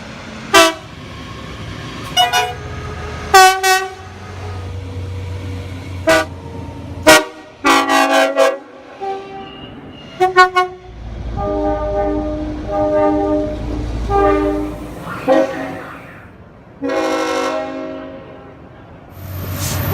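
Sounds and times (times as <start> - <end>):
low rumble of moving train: 0.0 - 19.9
train horn blasts: 0.5 - 0.8, 2.1 - 4.6, 6.0 - 6.3, 7.0 - 16.0, 16.8 - 18.7.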